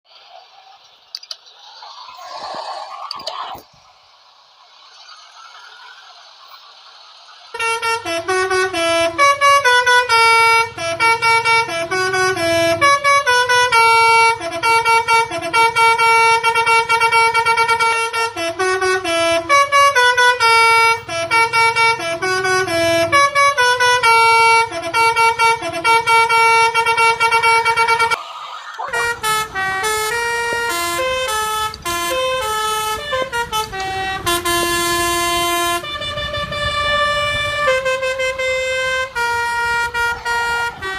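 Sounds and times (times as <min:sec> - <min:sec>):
multi-tone air horn playing tune: 0:07.5 - 0:28.2, 0:28.8 - 0:40.9.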